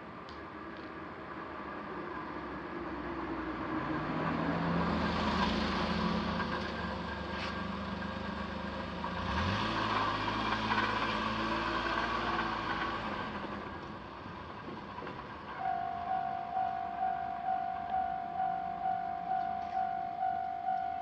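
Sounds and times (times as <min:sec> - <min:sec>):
approaching train hum: 0:00.0 - 0:21.0.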